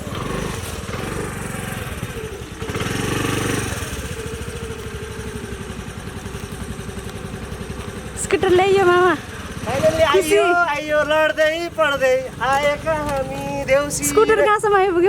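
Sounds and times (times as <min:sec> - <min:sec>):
motor scooter engine revving: 0:00.0 - 0:15.0.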